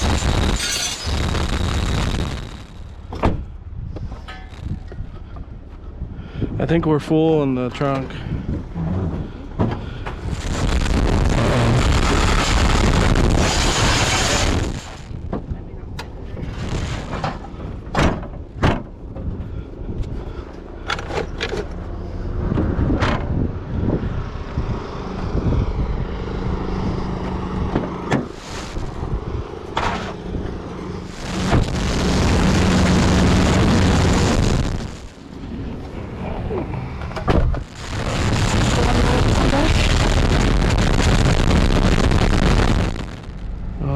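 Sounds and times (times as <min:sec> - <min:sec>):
vehicle engine running: 0:24.4 - 0:43.9.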